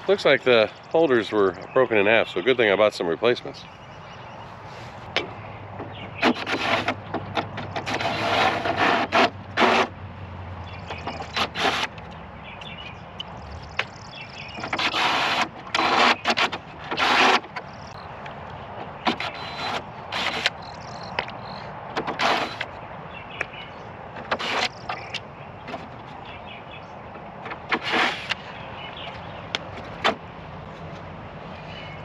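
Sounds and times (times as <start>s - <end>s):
metal downspout scraping and rattling: 4.7s - 10.0s, 10.8s - 12.2s, 13.6s - 30.3s.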